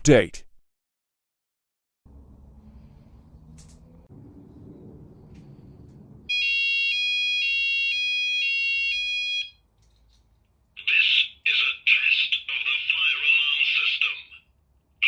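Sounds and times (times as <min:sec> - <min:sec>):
buzzy pulsing alarm: 0:04.3 - 0:09.6
two-tone fire alarm: 0:06.3 - 0:09.7.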